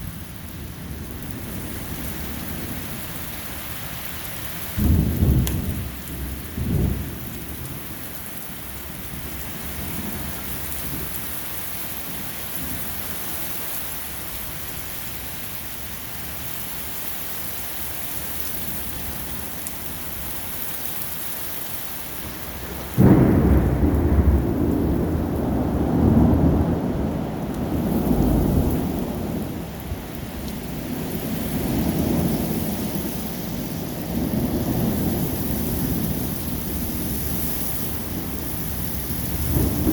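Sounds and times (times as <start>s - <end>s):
thunder clap and rumble: 0.0s - 13.3s, 22.3s - 39.9s
rain hiss: 0.0s - 39.9s.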